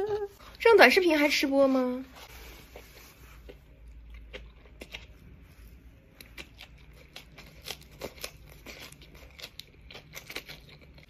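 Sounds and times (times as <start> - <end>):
wrapper crunching and crackling: 6.2 - 11.0.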